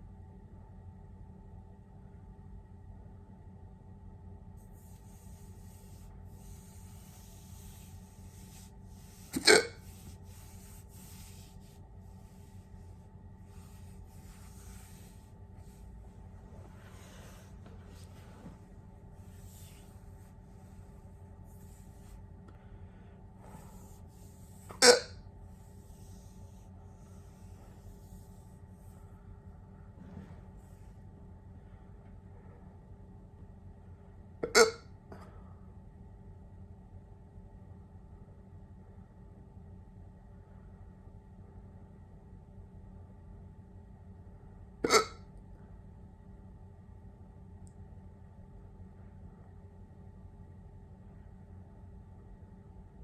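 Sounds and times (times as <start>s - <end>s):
sharp hiccup: 9.4s - 9.8s, 24.8s - 25.2s, 34.4s - 34.9s, 44.8s - 45.2s.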